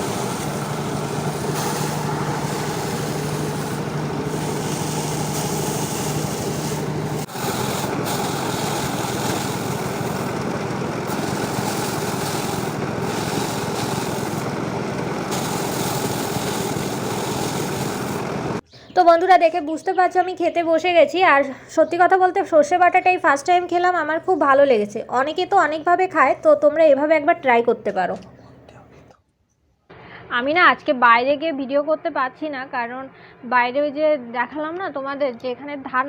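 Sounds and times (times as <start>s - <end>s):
threshing machine running: 0.0s - 18.6s.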